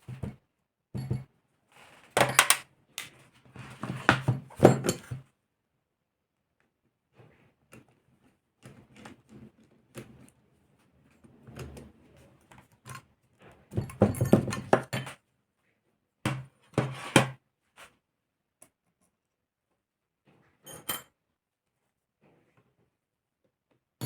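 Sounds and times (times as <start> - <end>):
metal parts clattering on table: 2.2 - 2.6.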